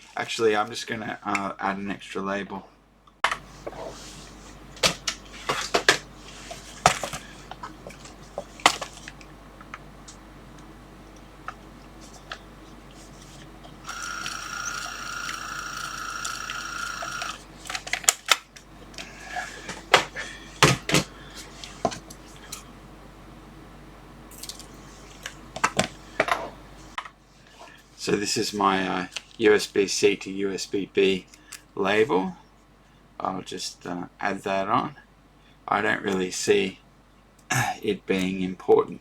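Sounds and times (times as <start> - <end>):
label printer mechanical whine: 13.6 - 17.7.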